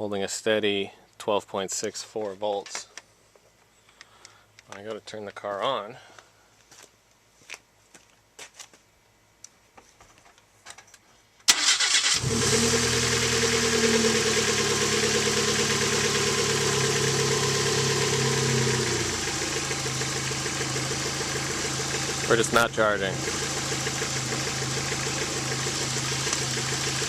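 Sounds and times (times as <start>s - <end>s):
car engine cranking and idling: 11.5s - 27.0s.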